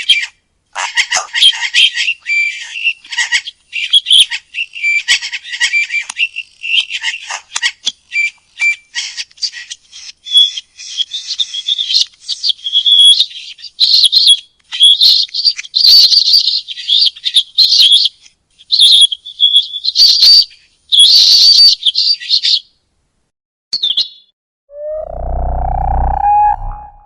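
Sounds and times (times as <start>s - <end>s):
penguin chirping: 24.7s - 27.0s.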